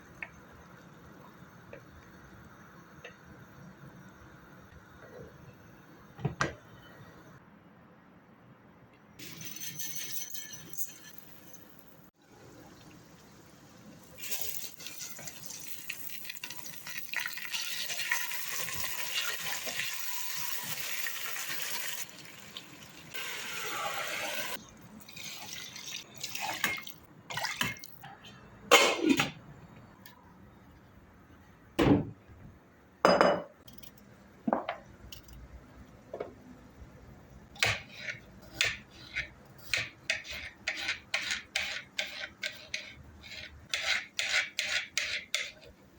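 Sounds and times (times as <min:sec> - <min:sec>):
dishes clinking: 0:33.0 - 0:33.8.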